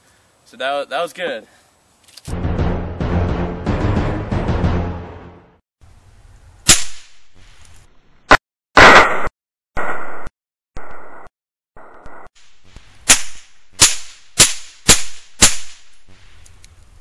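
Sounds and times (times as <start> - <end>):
music: 2.3 - 5.6
gunshots: 8.8 - 10.2, 13.1 - 15.8.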